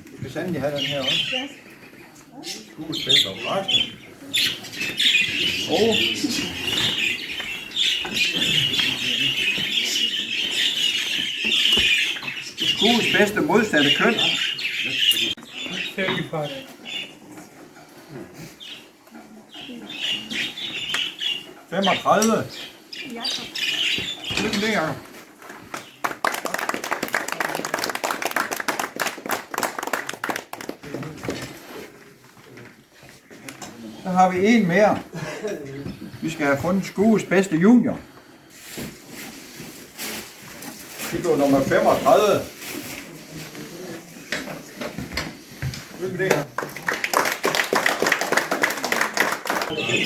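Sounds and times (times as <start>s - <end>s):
budgerigars chattering and chirping: 0.6s - 1.6s, 2.4s - 17.1s, 19.5s - 24.9s, 49.7s - 50.0s
audience applauding: 26.0s - 31.2s, 46.3s - 50.0s.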